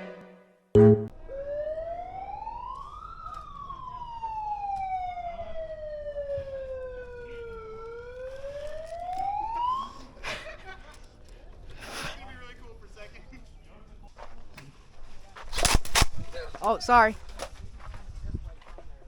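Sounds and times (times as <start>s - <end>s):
siren wailing: 0.8s - 10.0s.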